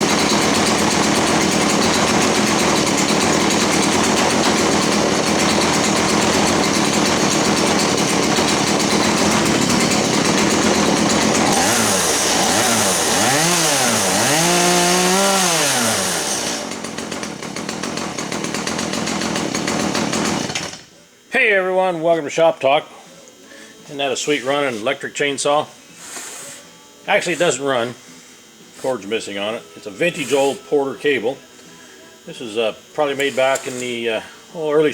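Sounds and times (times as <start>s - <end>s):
chainsaw running and revving: 0.0s - 20.8s.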